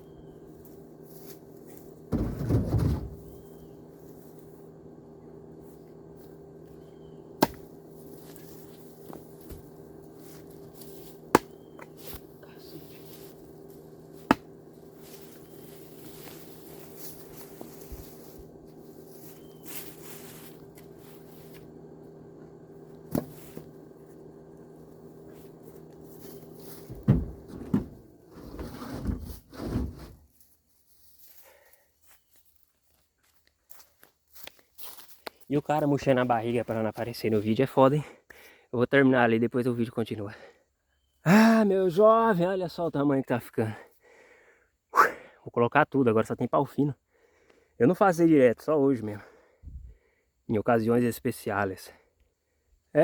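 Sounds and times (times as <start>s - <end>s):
steady low hum: 0.0s - 32.2s
wood thudding onto truck bed: 2.1s - 3.4s, 14.2s - 14.5s, 23.1s - 23.7s, 26.8s - 30.1s
firewood knocking: 7.4s - 7.7s, 14.2s - 15.2s.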